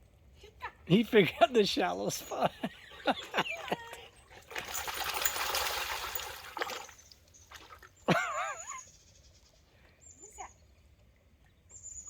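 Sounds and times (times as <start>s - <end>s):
dog wading through water: 2.7s - 8.6s.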